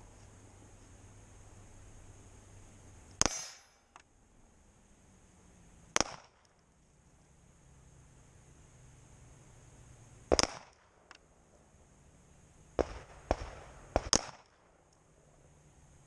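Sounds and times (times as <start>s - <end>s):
pistol shots: 3.2s - 3.8s, 6.0s - 6.5s, 10.3s - 11.0s, 12.8s - 14.7s.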